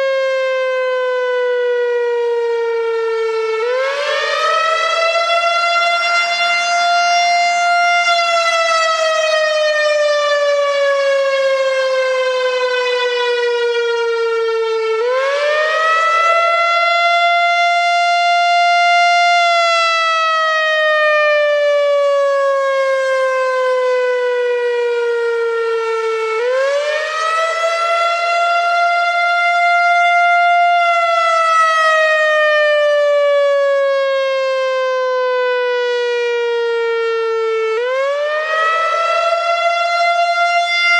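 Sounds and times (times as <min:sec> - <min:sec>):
electronic warning siren wailing: 0:00.0 - 0:40.9.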